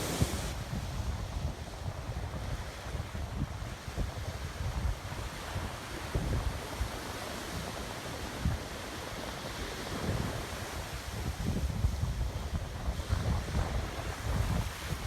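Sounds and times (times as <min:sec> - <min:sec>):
wind buffeting microphone: 0:00.0 - 0:06.6, 0:10.0 - 0:15.0
ocean surf on sand beach: 0:00.0 - 0:15.0.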